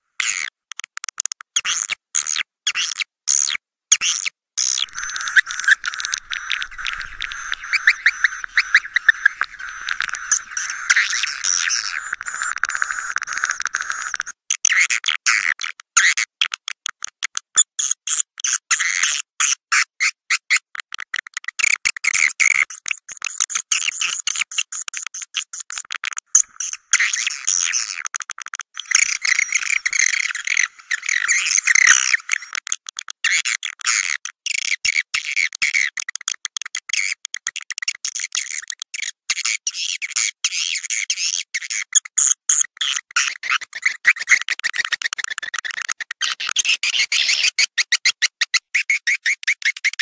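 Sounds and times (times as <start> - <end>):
swiftlets chattering twitters: 4.8 - 14.3, 28.8 - 32.5.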